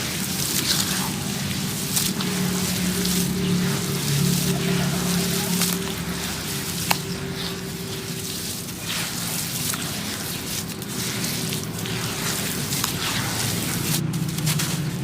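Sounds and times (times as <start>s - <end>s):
cement chunks crumbling and crushing: 0.0s - 15.0s
low steady hum: 0.0s - 15.0s.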